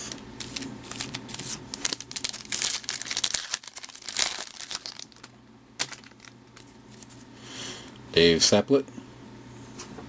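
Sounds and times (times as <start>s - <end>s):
foil wrapper crinkling: 0.4s - 7.3s.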